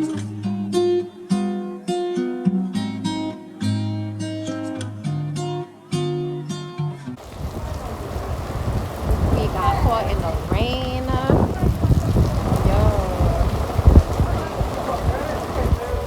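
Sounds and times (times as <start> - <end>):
acoustic guitar plucking and strumming: 0.0 - 7.2
rain hissing: 7.2 - 16.0.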